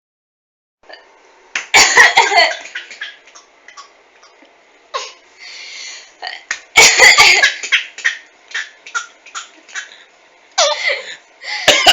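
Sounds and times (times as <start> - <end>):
harsh loud coughing: 1.7 - 2.6, 6.8 - 10.0, 11.6 - 11.9.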